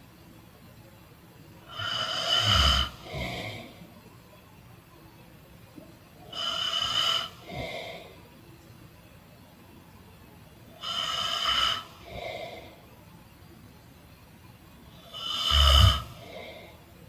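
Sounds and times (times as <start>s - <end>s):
person snoring: 15.2s - 16.2s.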